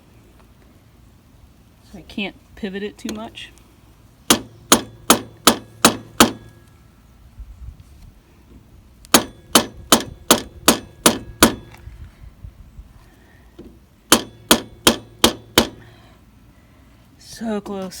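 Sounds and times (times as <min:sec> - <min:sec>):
hammer tapping on metal: 0:04.3 - 0:06.5, 0:09.1 - 0:11.7, 0:14.1 - 0:15.8.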